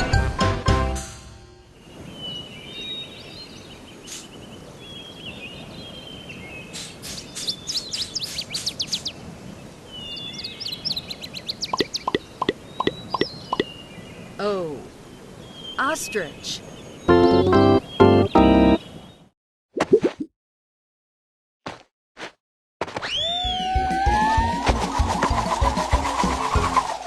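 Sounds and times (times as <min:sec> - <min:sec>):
birds chirping and trilling: 0:01.7 - 0:19.3.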